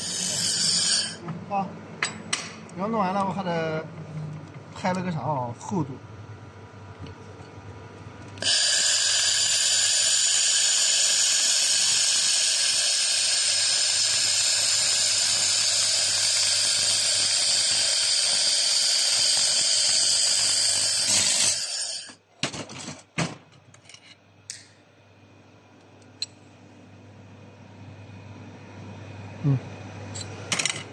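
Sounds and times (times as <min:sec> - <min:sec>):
welding machine hissing: 0:08.4 - 0:22.2.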